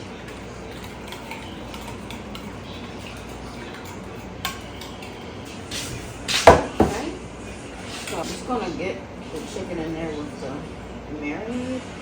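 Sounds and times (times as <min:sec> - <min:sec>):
kitchenware clinking against bowl: 0:00.2 - 0:07.1.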